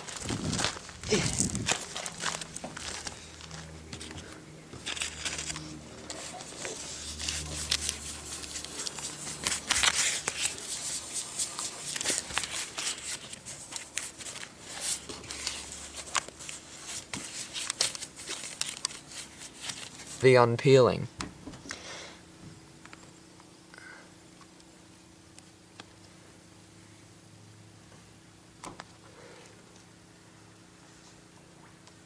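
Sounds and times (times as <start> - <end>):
sticker paper rustling and crinkling: 0.0 - 20.2.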